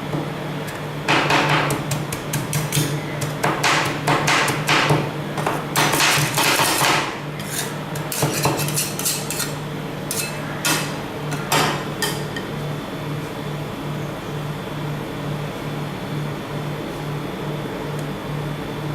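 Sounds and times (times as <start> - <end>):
steady low hum: 0.0 - 18.9
metal spatulas striking a plate: 1.1 - 12.2.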